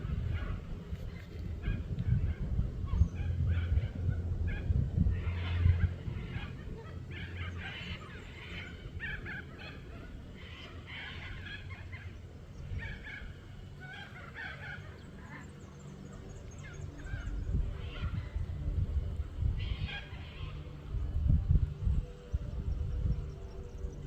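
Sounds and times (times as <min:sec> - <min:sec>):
birds chirping: 0:00.0 - 0:24.0
low steady rumble: 0:00.0 - 0:24.0.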